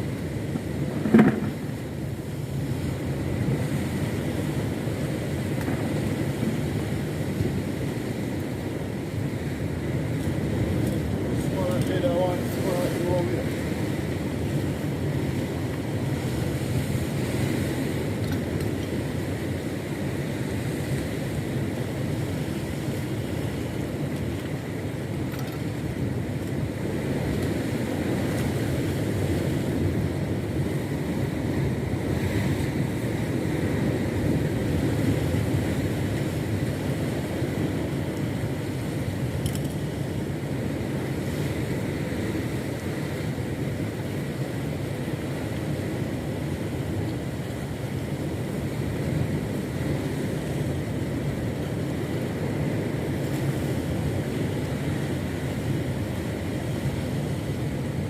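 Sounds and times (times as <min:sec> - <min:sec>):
water noise: 0:00.0 - 0:58.0
wind: 0:00.0 - 0:58.0
boat motor running: 0:00.6 - 0:01.8.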